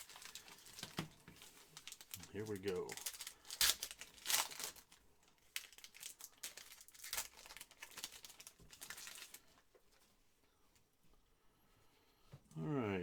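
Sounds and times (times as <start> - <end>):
card pack wrappers tearing and crinkling: 0.0 - 9.5.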